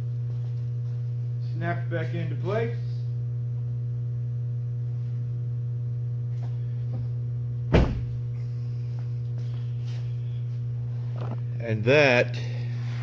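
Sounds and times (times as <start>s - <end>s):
steady low hum: 0.0s - 13.0s
heavy thump: 7.7s - 8.3s.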